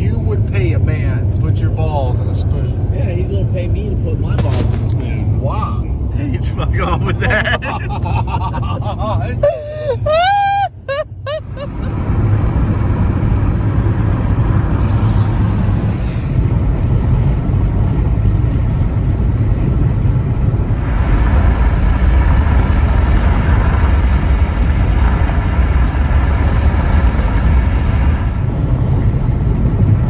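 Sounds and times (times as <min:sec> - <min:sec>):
car road and engine rumble: 0:00.0 - 0:30.0
road hiss: 0:11.4 - 0:16.6, 0:20.6 - 0:28.5.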